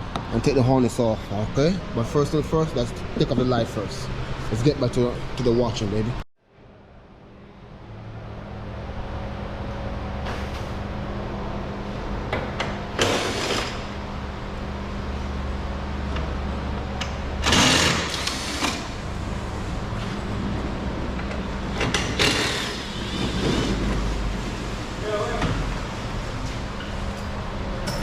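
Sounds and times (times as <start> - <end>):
steady low hum: 0.0 - 28.0
tool and parts noise: 21.8 - 23.9.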